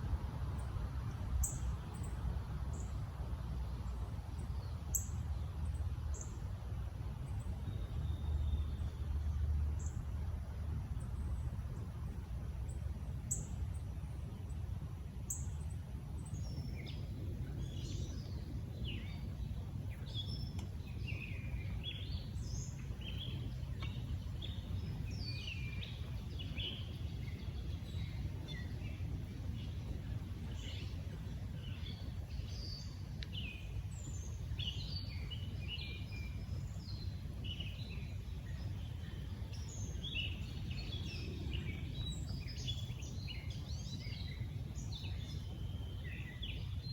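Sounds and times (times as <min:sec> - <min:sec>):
low background rumble: 0:00.0 - 0:46.9
songbirds chirping: 0:00.0 - 0:46.9.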